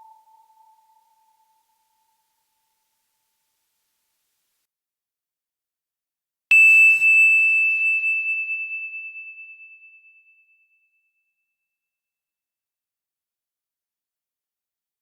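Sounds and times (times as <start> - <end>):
high-pitched synthesized ringing tone: 0.0 - 1.5.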